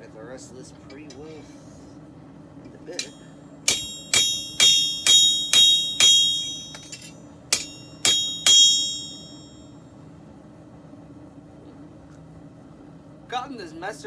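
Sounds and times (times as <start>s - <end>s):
hammer blows on steel anvil: 3.0s - 9.6s.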